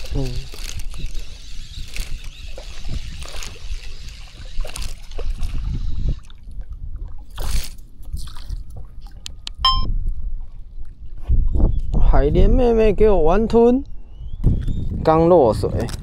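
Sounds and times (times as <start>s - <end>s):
water sloshing: 0.0s - 11.2s
wind rumble on microphone: 0.0s - 16.0s.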